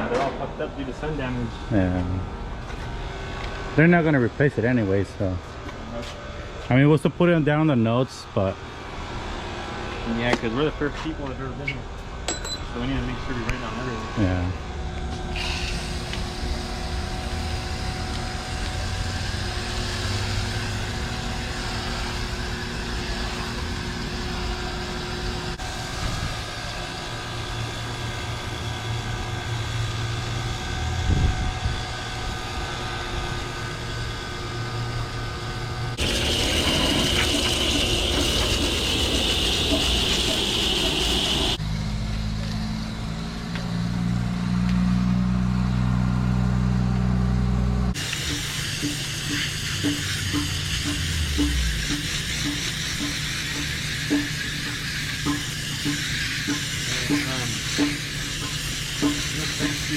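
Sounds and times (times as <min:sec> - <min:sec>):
air conditioner hum and fan: 0:00.0 - 0:37.1
loud hissing rush: 0:36.0 - 0:41.6.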